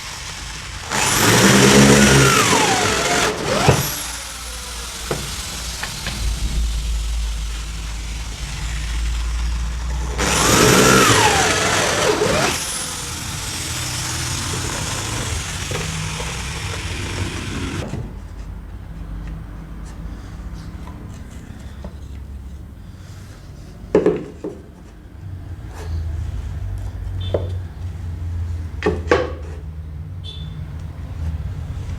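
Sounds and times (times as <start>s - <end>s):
lathe motor humming: 0.0s - 17.9s.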